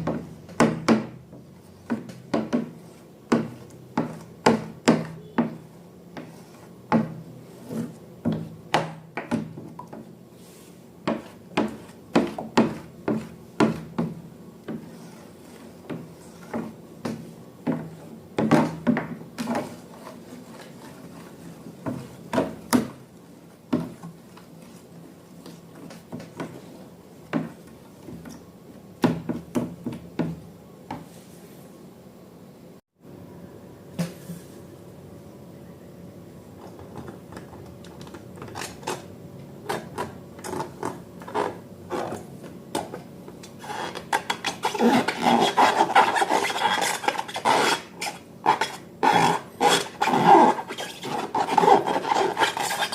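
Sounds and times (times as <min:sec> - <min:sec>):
faint steady hum: 0:00.0 - 0:52.9
rubbing and scraping: 0:43.6 - 0:52.9.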